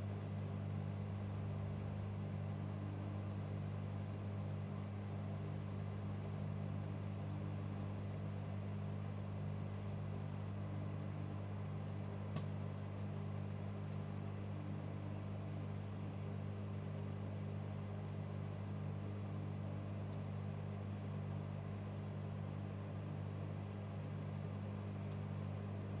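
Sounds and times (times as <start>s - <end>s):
microwave oven humming: 0.0s - 26.0s
light tick: 11.5s - 14.1s, 20.0s - 20.6s.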